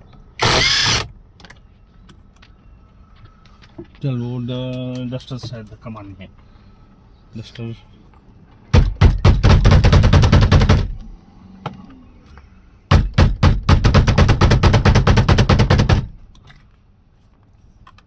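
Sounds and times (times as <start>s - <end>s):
pneumatic impact wrench hammering: 0.4s - 1.1s.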